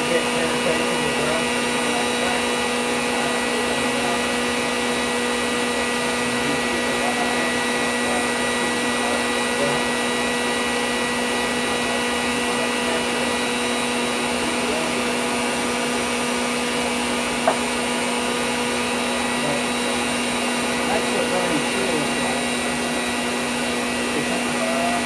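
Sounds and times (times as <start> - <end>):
air blower motor whirring: 0.0 - 25.0.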